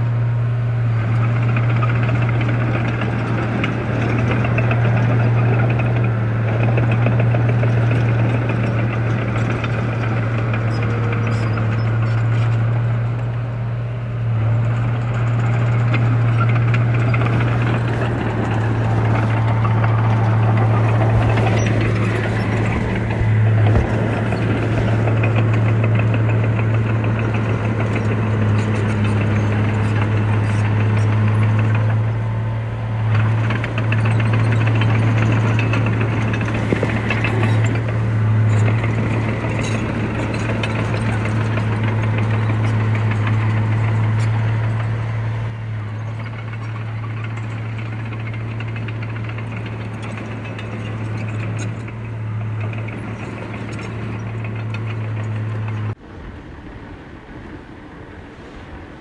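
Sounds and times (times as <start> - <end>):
heavy machinery diesel engine: 0.0 - 59.0.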